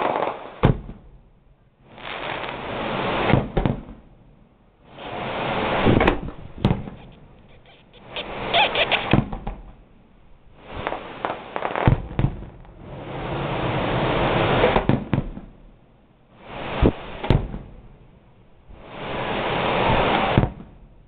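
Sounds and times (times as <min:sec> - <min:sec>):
fireworks bangs and crackling: 0:00.0 - 0:09.8, 0:10.5 - 0:21.0
fireworks hissing: 0:01.8 - 0:03.4, 0:04.8 - 0:09.4, 0:10.5 - 0:14.9, 0:16.3 - 0:17.8, 0:18.7 - 0:20.6.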